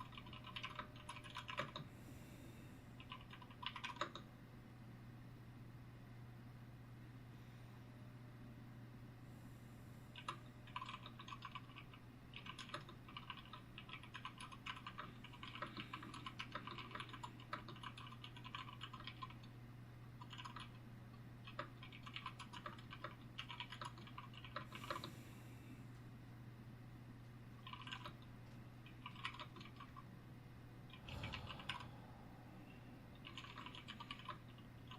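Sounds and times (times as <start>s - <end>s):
typing on computer keyboard: 0.0s - 1.9s, 3.0s - 4.3s, 10.1s - 19.5s, 20.2s - 20.8s, 21.4s - 25.1s, 27.6s - 30.0s, 33.2s - 34.9s
steady low hum: 0.0s - 34.9s.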